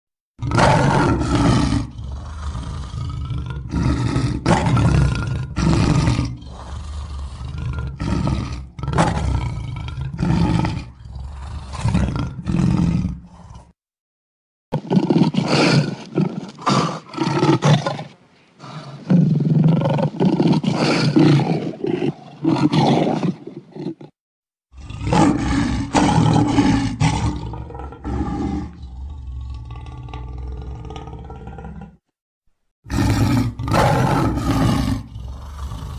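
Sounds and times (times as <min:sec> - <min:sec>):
lion roaring: 0:00.4 - 0:13.8, 0:14.8 - 0:24.1, 0:24.7 - 0:32.0, 0:32.9 - 0:35.9.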